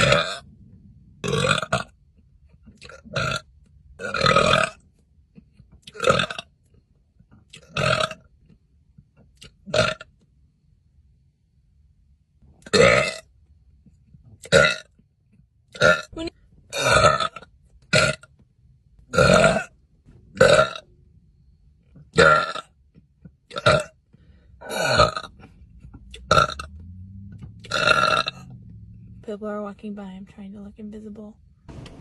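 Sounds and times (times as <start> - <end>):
woman burping: 24.6 - 25.3.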